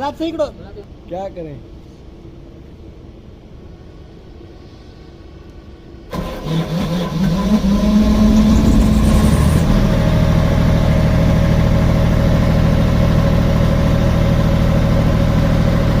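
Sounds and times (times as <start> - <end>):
diesel generator engine running: 6.1 - 16.0.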